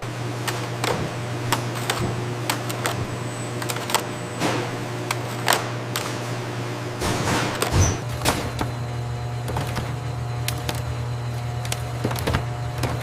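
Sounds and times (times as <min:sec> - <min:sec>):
factory machinery humming: 0:00.0 - 0:13.0.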